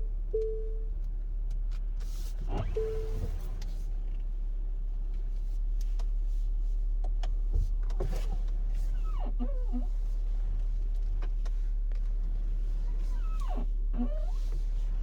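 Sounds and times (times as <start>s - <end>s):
steering clicks and knocks: 7.0s - 10.0s, 10.6s - 15.0s.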